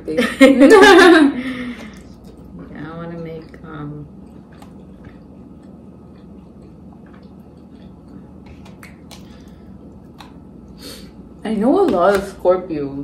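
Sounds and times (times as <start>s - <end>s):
people chewing food: 1.4s - 11.4s.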